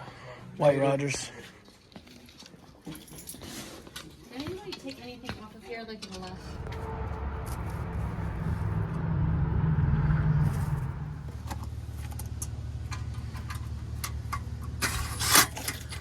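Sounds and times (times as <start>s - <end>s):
vehicle engine rumble from inside: 6.2s - 16.0s.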